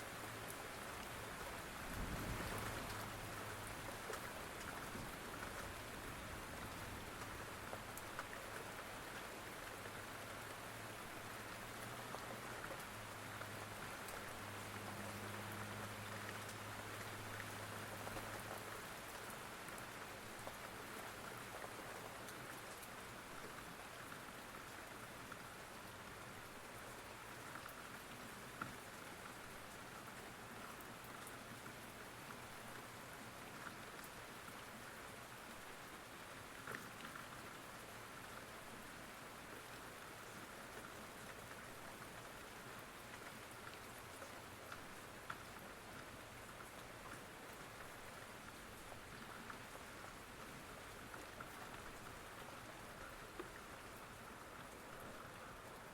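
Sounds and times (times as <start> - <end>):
rain patter: 0.0 - 55.9
raindrop ticks: 0.4 - 35.2, 35.8 - 38.9, 39.6 - 55.9.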